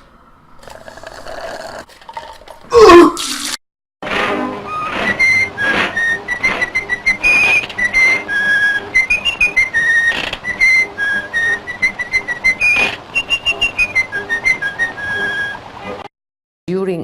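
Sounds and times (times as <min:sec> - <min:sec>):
person whistling a tune: 0:04.8 - 0:15.6.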